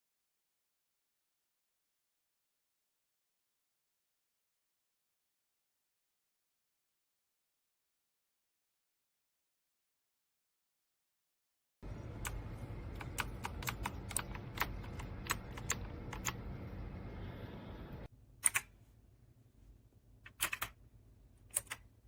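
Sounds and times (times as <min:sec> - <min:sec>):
mechanical keyboard clicks: 0:13.0 - 0:16.4, 0:18.4 - 0:18.7, 0:20.3 - 0:20.8, 0:21.5 - 0:21.9.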